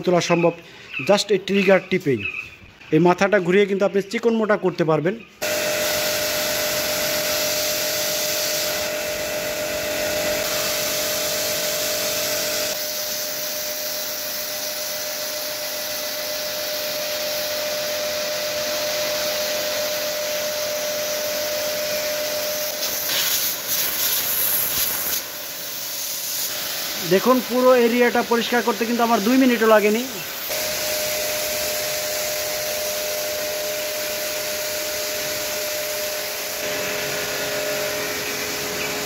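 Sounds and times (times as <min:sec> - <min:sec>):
motor whine: 0:05.4 - 0:12.9, 0:29.3 - 0:39.0
pressure washer jet hissing: 0:05.4 - 0:39.0.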